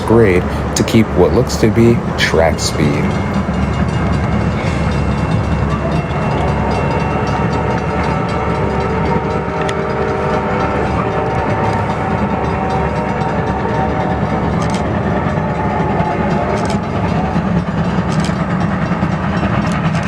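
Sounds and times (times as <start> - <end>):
steam locomotive exhaust chuffing: 0.0 - 20.0
train running rumble: 0.0 - 20.0
steam whistle: 5.7 - 17.6.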